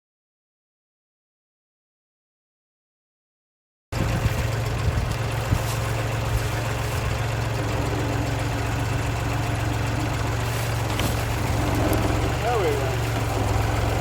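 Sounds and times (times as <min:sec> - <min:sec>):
tractor engine running: 0:04.0 - 0:14.0.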